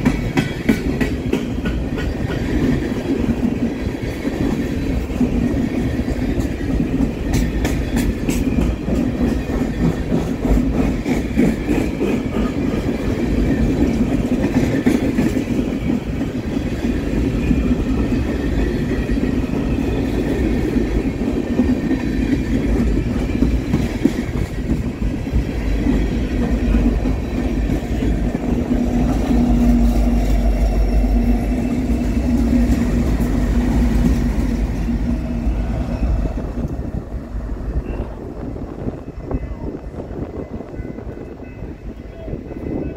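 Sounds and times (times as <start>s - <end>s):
freight train rumbling: 0.0s - 42.9s.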